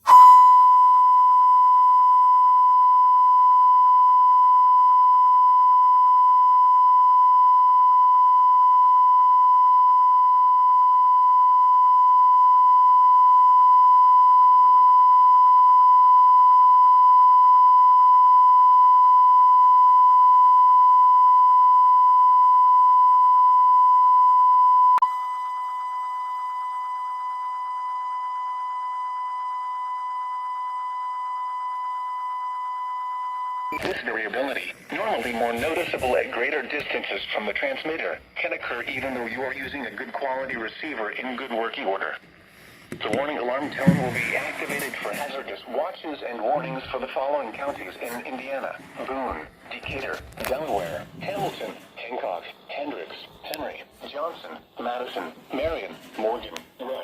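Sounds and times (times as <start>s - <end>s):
lower electronic tone: 0.0s - 33.8s
electronic censor tone: 0.0s - 33.9s.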